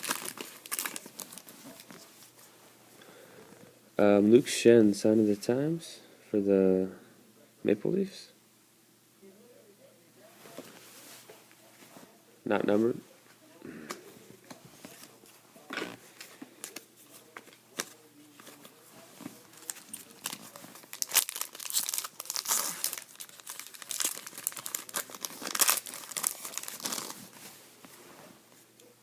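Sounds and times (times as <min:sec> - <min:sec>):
wrapper tearing and crinkling: 0:00.0 - 0:01.9, 0:19.5 - 0:27.4.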